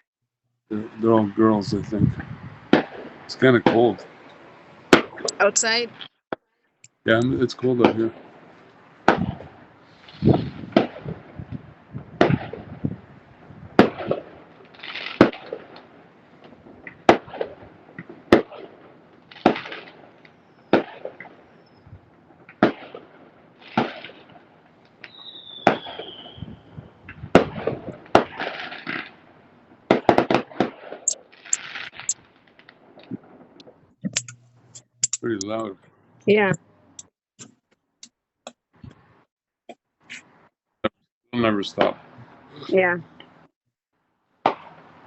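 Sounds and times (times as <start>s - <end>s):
firework bangs: 2.5s - 4.3s, 4.9s - 5.7s, 7.1s - 13.1s, 13.7s - 21.8s, 22.4s - 33.5s, 41.7s - 42.1s, 44.4s - 45.0s
firework crackling: 2.6s - 6.0s, 7.1s - 21.8s, 22.4s - 33.5s
quick cracks: 13.8s - 21.4s, 22.5s - 26.1s
short falling whistle: 25.1s - 26.6s.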